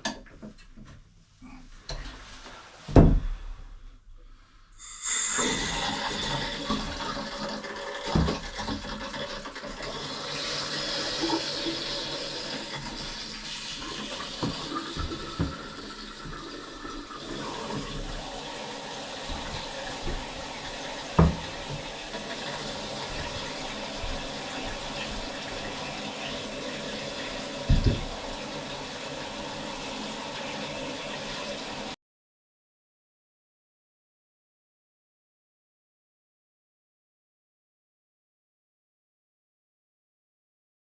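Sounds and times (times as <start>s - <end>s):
water rushing and filling: 4.8s - 32.0s.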